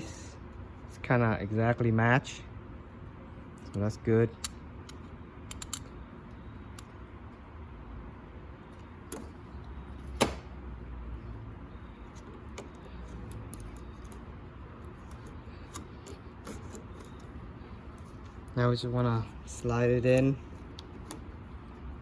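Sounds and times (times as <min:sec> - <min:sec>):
door lock parts clicking: 0:04.4 - 0:06.0, 0:12.1 - 0:18.6.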